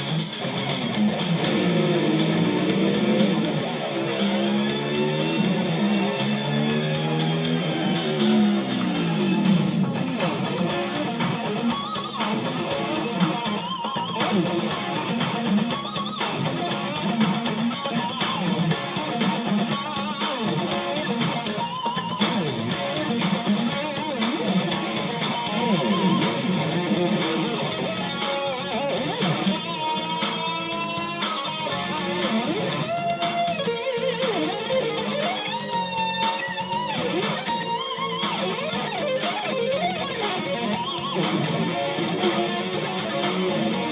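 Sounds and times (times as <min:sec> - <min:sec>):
rock music: 0:00.0 - 0:43.9
strummed guitar: 0:00.0 - 0:43.9
low bass line: 0:00.4 - 0:11.7, 0:24.6 - 0:31.2
wavering higher melody: 0:25.2 - 0:31.3.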